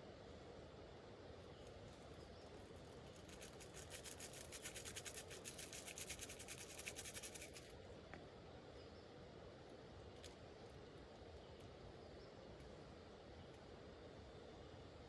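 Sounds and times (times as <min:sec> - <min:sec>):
rapid scratchy rubbing: 0:03.1 - 0:07.7.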